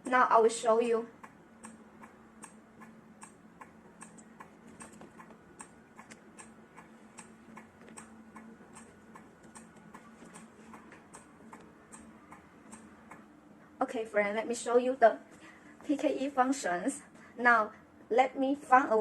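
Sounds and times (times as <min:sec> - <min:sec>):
faint ticking: 0:01.1 - 0:13.7.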